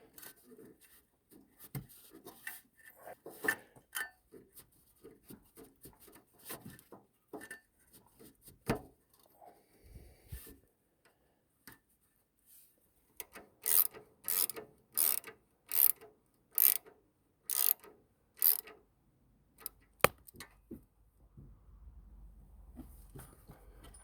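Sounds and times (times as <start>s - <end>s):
ratchet wrench clicking: 13.2s - 16.9s, 17.5s - 18.8s
sharp click: 19.6s - 20.4s.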